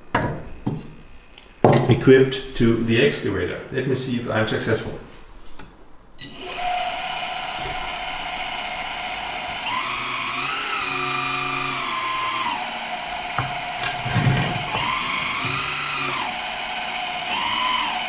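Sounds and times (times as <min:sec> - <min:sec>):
hydraulic pump whining: 0:06.2 - 0:18.0.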